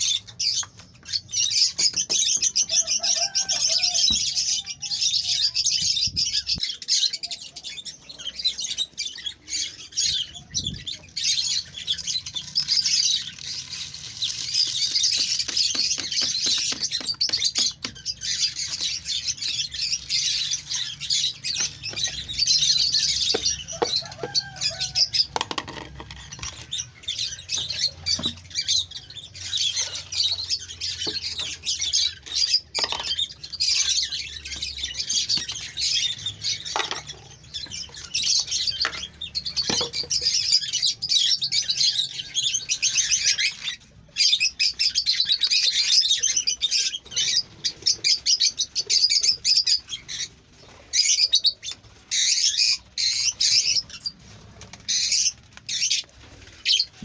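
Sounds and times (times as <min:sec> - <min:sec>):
parrots chirping and chattering: 0:00.0 - 0:57.0.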